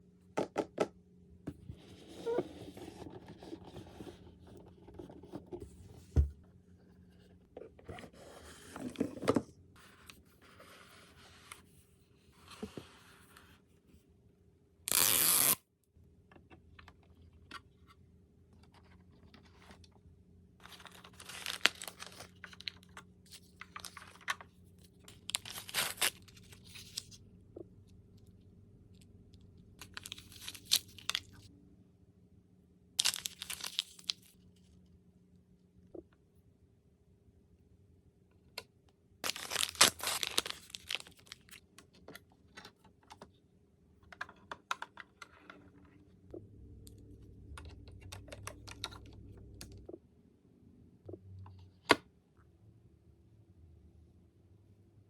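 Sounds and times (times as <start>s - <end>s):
packaging torn and crinkled: 33.0s - 34.2s, 39.2s - 41.6s.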